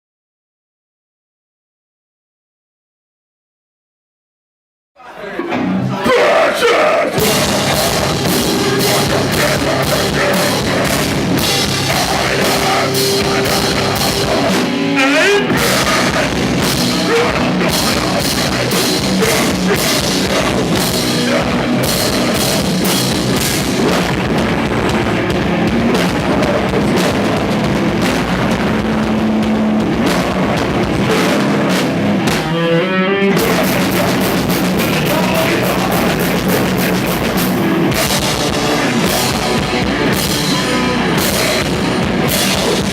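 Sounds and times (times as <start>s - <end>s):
heavy metal band playing: 5.4s - 42.9s
wavering guitar note: 7.2s - 23.9s, 32.2s - 36.9s
fast dense drumming: 7.2s - 32.5s, 33.4s - 42.9s.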